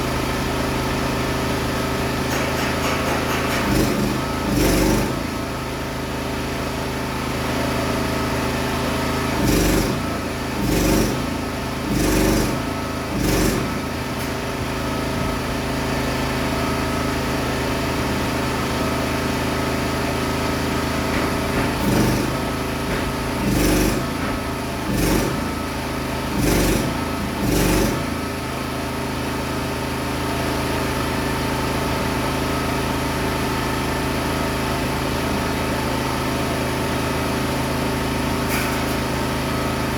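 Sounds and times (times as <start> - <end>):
small engine running: 0.0 - 39.9
loud knocks: 21.0 - 24.6.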